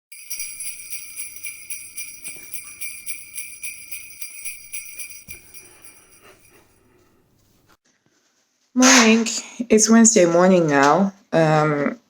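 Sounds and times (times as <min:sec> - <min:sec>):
jingle bells shaken: 0:00.0 - 0:07.0.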